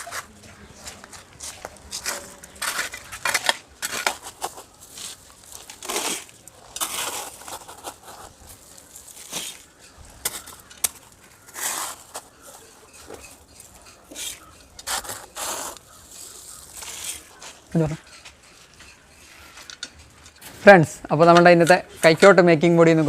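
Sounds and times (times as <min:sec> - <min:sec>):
hand spade scraping and chopping ground: 0:01.5 - 0:22.1.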